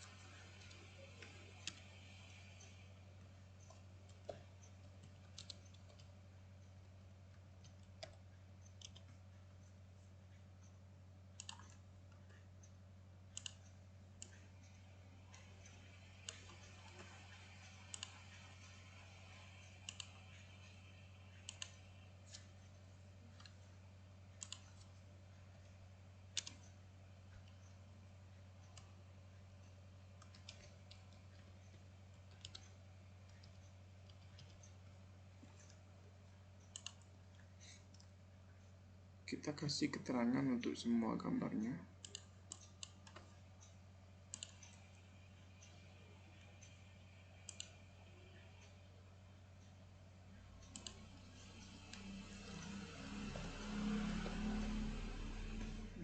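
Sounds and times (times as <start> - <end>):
computer mouse clicking: 0.0 - 2.8, 3.6 - 9.8, 11.3 - 23.7, 24.3 - 25.0, 26.3 - 27.8, 29.6 - 35.8, 36.6 - 38.1, 42.0 - 46.8, 47.4 - 47.8, 50.6 - 55.8
faint electrical hum: 0.0 - 56.0.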